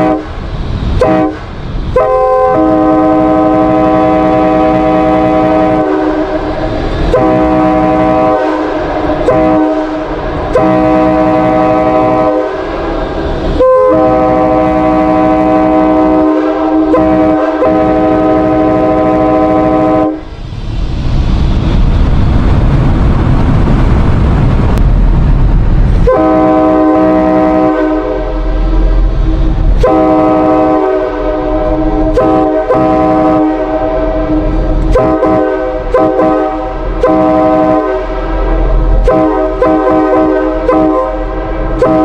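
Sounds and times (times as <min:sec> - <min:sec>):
loud rushing noise: 0:00.0 - 0:42.0
five-chime train horn: 0:02.0 - 0:06.5, 0:07.1 - 0:12.6, 0:13.6 - 0:20.2, 0:26.1 - 0:28.9, 0:29.8 - 0:42.0.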